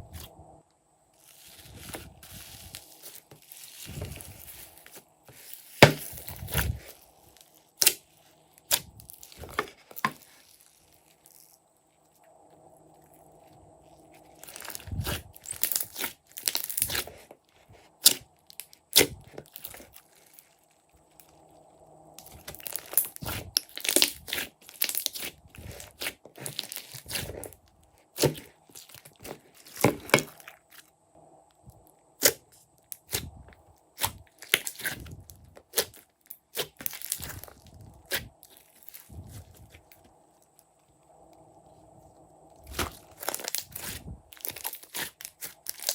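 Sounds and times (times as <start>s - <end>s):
slime crackling and popping: 1.3s - 11.6s, 14.4s - 17.2s, 18.0s - 20.5s, 22.2s - 30.8s, 32.2s - 33.3s, 34.0s - 40.0s, 42.6s - 45.9s.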